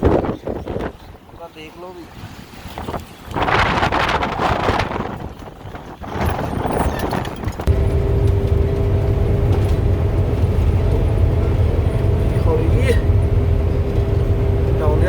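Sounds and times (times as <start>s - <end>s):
wind buffeting microphone: 0.0s - 15.0s
truck engine droning: 6.0s - 15.0s.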